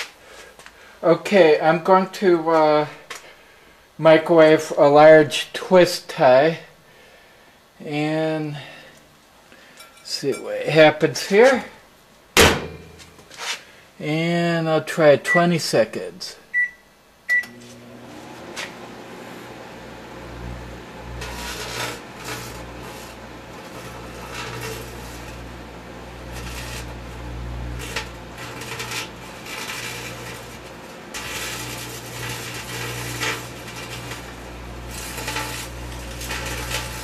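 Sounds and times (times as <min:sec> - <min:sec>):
microwave oven humming: 0:16.5 - 0:37.0
wire arcing crackles and pops: 0:21.1 - 0:37.0.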